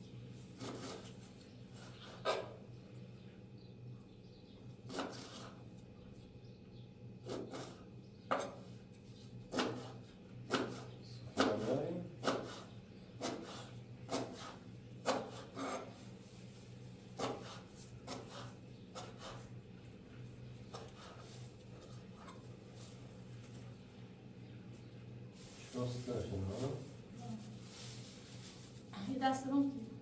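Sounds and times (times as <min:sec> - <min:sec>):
scraping strokes on wood: 0:07.2 - 0:08.6, 0:09.5 - 0:16.0, 0:17.2 - 0:19.6.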